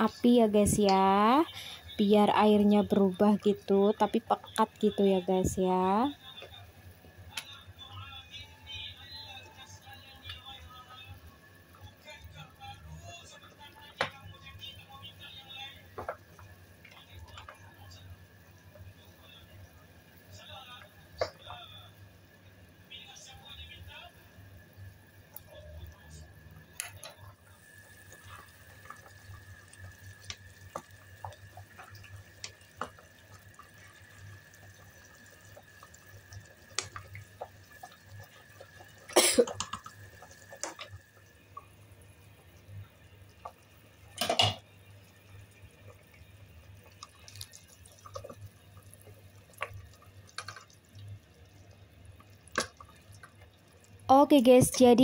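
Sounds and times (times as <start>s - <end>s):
soup bubbling and popping: 15.6s - 19.2s, 20.7s - 21.7s, 24.8s - 54.1s.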